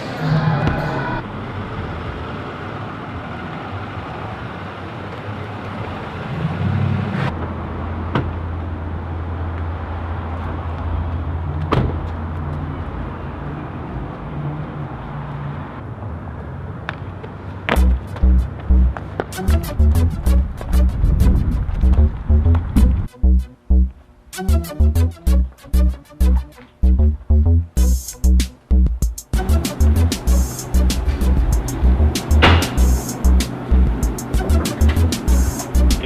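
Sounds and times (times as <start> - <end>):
car engine humming: 17.7 - 24.0, 26.2 - 36.0
pounding electronic beat: 17.8 - 36.0.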